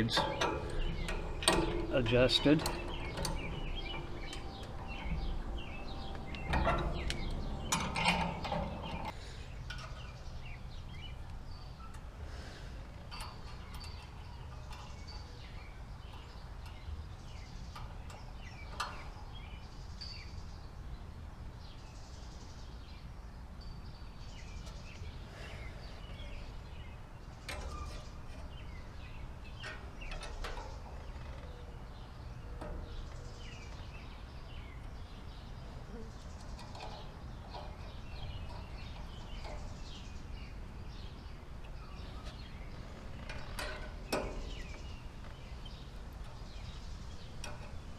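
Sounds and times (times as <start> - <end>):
low rumble: 0.0 - 9.1
birds chirping: 0.0 - 47.9.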